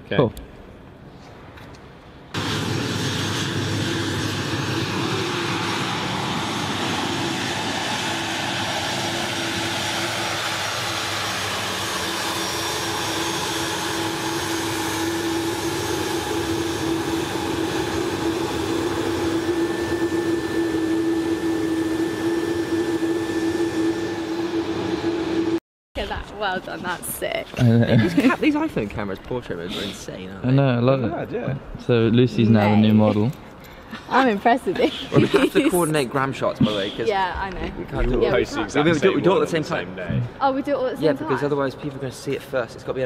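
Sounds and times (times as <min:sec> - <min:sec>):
jet engine running: 0:02.3 - 0:25.6.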